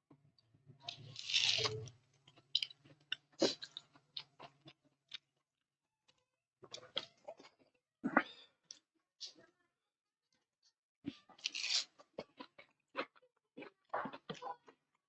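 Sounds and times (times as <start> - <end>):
person chewing crunchy food: 0.9 - 5.3, 11.1 - 14.9.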